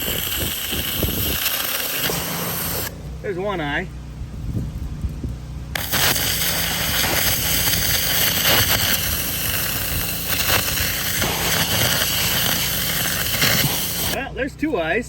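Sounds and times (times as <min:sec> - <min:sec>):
pressure washer jet hissing: 0:00.0 - 0:03.1, 0:05.7 - 0:14.2
pressure washer engine running: 0:00.0 - 0:15.0.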